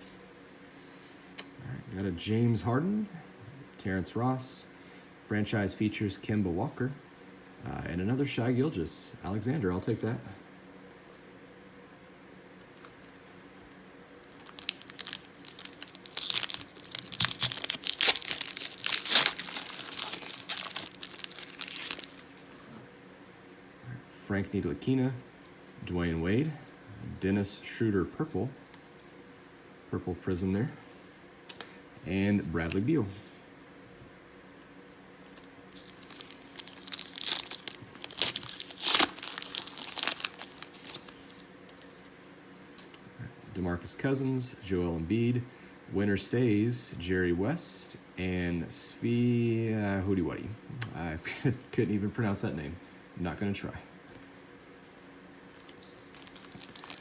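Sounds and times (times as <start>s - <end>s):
foil wrapper crinkling: 14.2s - 22.7s, 35.0s - 42.0s, 55.2s - 57.0s.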